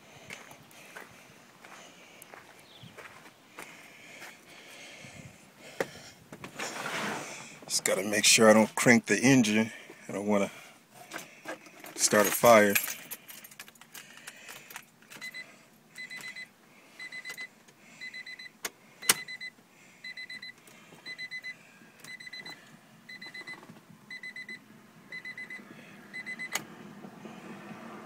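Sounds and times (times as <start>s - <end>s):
car warning chime beeping: 15.2s - 26.6s.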